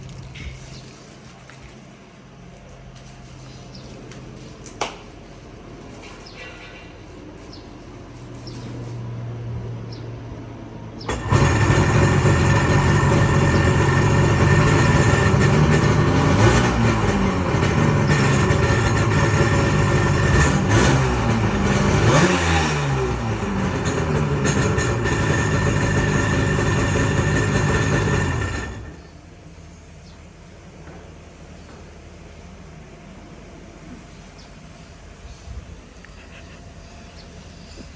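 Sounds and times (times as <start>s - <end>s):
jet ski engine revving: 11.1s - 29.0s.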